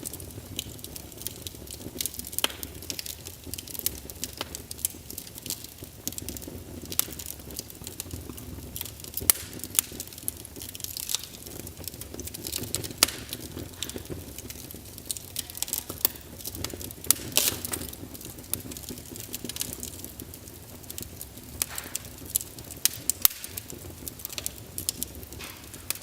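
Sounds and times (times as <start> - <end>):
fire crackling and popping: 0.0 - 26.0
low rumble of flames: 0.0 - 26.0.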